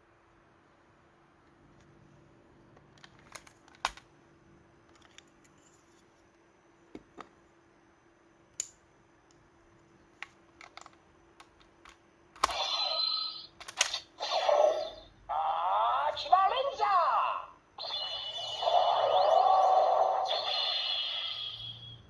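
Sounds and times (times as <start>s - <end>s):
electronic toy sound effect: 12.4s - 22.0s
plastic toy clicks: 13.6s - 14.1s.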